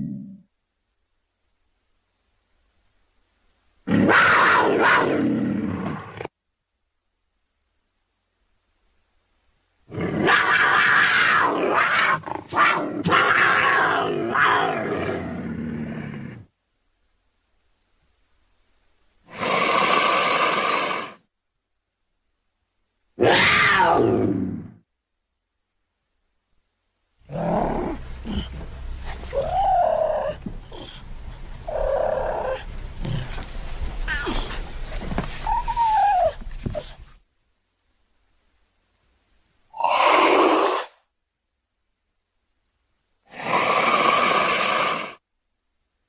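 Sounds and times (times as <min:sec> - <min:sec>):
cougar growling roar: 0:09.9 - 0:16.5, 0:27.2 - 0:34.7
steady low hum: 0:24.3 - 0:39.7
cougar calling: 0:27.2 - 0:37.0.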